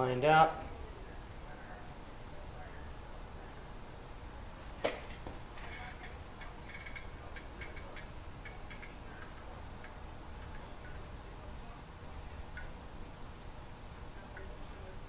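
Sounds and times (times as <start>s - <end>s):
oil pan and gasket clicking: 5.1s - 11.0s.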